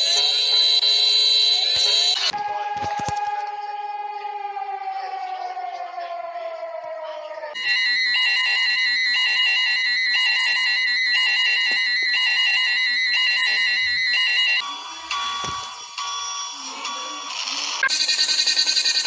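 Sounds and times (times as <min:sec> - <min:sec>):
harsh pulsing electronic alarm: 0:00.0 - 0:02.4, 0:07.5 - 0:19.0
falling siren wail: 0:00.7 - 0:14.6.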